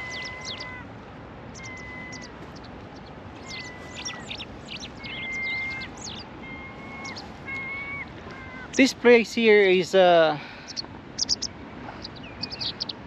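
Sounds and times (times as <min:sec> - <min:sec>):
bird whistling call: 0:00.0 - 0:00.8, 0:03.4 - 0:08.8
high bird chirps: 0:00.0 - 0:00.8, 0:01.5 - 0:08.8, 0:10.6 - 0:13.0.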